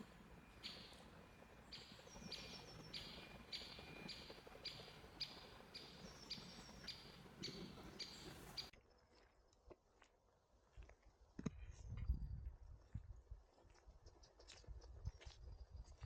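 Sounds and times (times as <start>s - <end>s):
footsteps crunching on snow: 6.2s - 8.7s.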